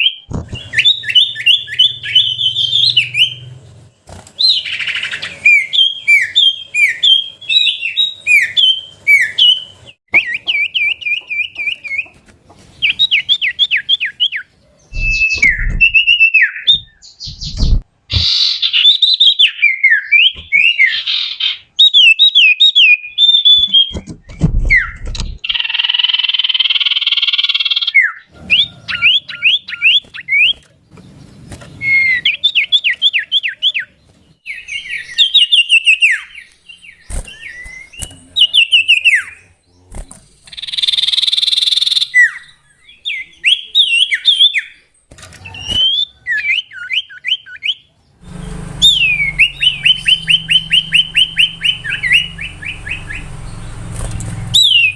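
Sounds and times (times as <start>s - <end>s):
bird whistling song with trills: 0.0s - 3.5s, 4.4s - 12.1s, 12.8s - 17.7s, 18.3s - 30.6s, 31.8s - 39.5s, 40.4s - 47.9s, 48.8s - 53.8s, 54.5s - 54.9s
harsh buzzy bird call: 0.0s - 3.6s, 4.4s - 12.1s, 34.5s - 54.9s
low thumps: 14.9s - 17.9s.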